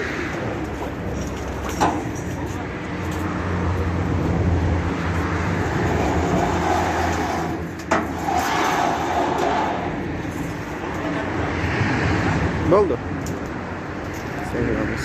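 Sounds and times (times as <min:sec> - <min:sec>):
engine humming: 0:00.0 - 0:11.3.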